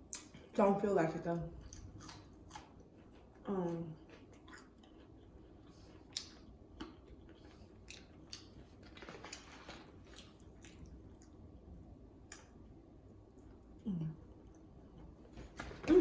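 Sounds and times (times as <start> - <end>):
person chewing: 1.7 - 11.4.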